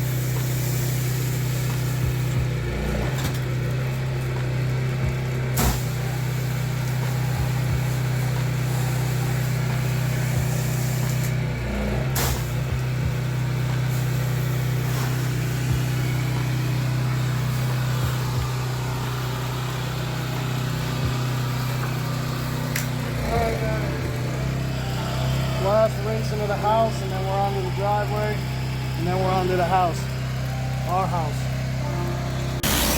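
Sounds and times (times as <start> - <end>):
water spray hiss: 0.0 - 2.6, 4.6 - 11.5, 12.2 - 23.6, 32.6 - 32.9
pressure washer engine drone: 0.0 - 32.9.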